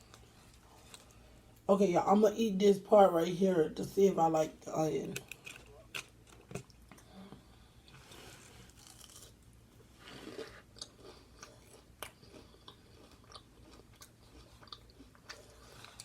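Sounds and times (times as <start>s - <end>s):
person chewing sandwich: 0.0s - 1.6s, 5.2s - 16.0s.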